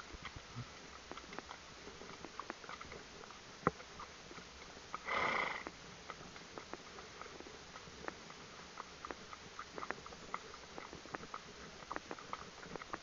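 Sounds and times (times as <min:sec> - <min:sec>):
hooves and tack clicking: 0:00.0 - 0:13.0
horse blowing: 0:05.0 - 0:05.7.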